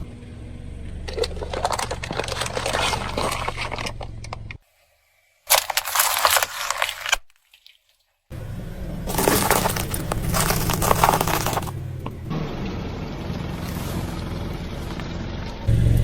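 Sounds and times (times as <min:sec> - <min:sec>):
crackling crunching noise: 0:00.9 - 0:04.6, 0:05.5 - 0:07.8, 0:09.1 - 0:12.3, 0:13.5 - 0:15.1.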